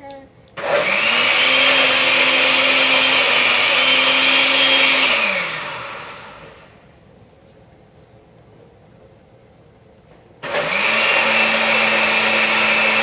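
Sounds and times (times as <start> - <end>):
blender motor whine: 0.6 - 6.8, 10.4 - 13.0.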